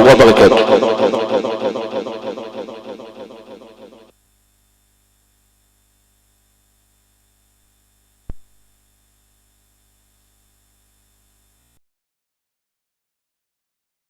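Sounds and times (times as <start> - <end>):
low electrical mains hum: 4.1 - 11.8
sharp click: 8.3 - 8.6.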